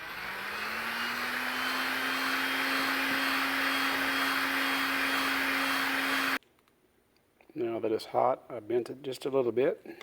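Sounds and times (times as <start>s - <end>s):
heat gun fan whine: 0.0s - 6.4s.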